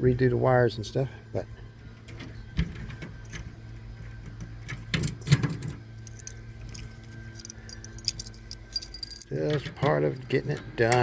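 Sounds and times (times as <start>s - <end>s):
faint steady hum: 0.0s - 11.0s
keys jangling: 6.0s - 10.4s.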